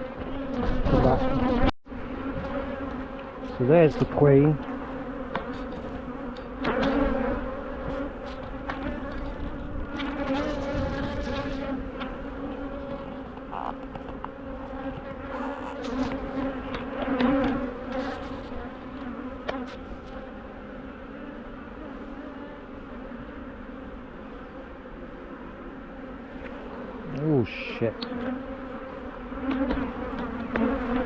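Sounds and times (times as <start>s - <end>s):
honeybees buzzing: 0.0s - 31.0s.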